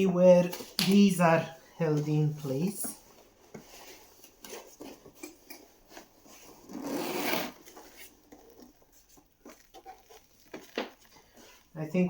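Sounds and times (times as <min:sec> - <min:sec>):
fabric and plastic rubbing: 0:00.0 - 0:11.8.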